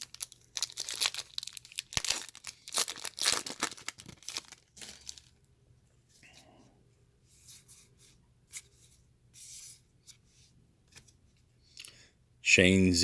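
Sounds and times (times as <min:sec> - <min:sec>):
wrapper tearing and crinkling: 0:00.0 - 0:05.3.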